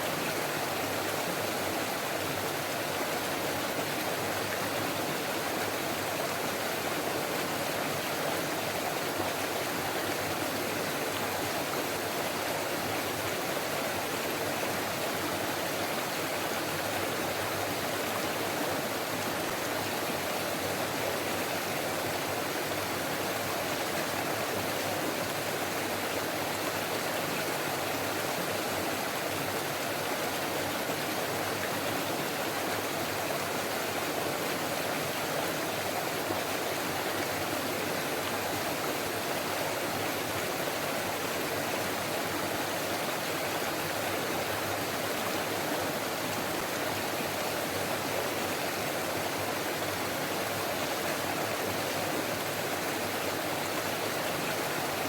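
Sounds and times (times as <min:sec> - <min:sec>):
stream water flowing: 0:00.0 - 0:55.0.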